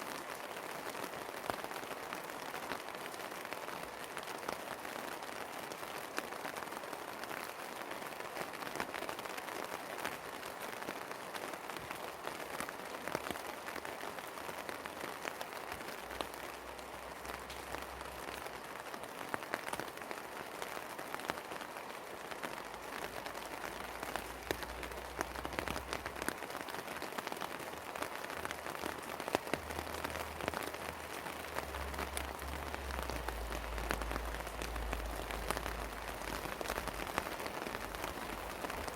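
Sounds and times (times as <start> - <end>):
steady rain falling: 0.0 - 38.9
raindrops ticking: 11.1 - 38.9.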